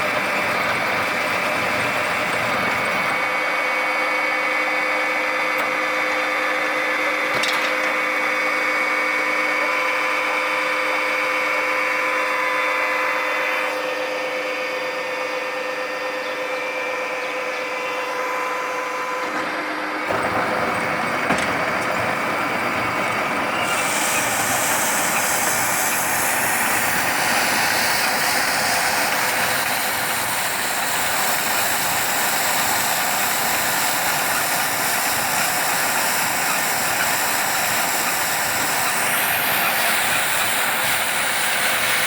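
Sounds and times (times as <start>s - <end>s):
baler machine whining: 0.0s - 42.0s
low engine rumble: 20.0s - 42.0s.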